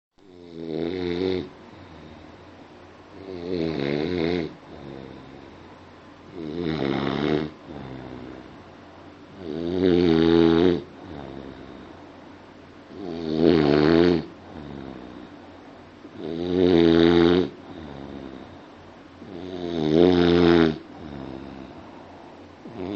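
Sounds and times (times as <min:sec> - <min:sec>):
person snoring: 0:00.2 - 0:02.4, 0:03.1 - 0:05.7, 0:06.3 - 0:08.6, 0:09.3 - 0:12.0, 0:12.9 - 0:15.4, 0:16.1 - 0:22.9
soft breathing: 0:01.5 - 0:02.6, 0:20.8 - 0:22.9.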